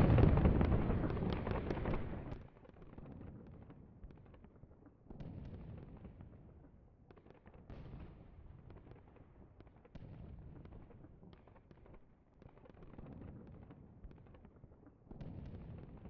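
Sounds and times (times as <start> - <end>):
faint explosions with low rumble: 0.0 - 2.4.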